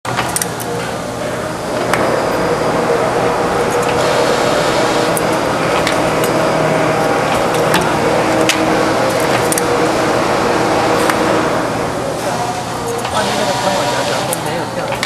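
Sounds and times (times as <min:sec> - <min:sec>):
sharp clicks: 0:00.1 - 0:00.7
machine humming drone: 0:00.1 - 0:15.0.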